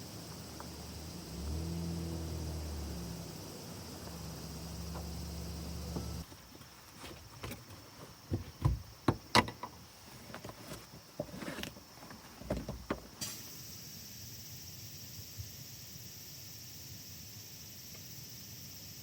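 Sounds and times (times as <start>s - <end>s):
crickets chirping: 0.0s - 19.0s
irregular knocks and clatters: 7.0s - 9.8s.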